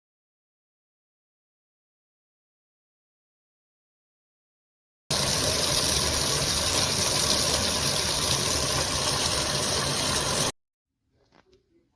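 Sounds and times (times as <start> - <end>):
water spraying from shower hose: 5.1 - 10.5.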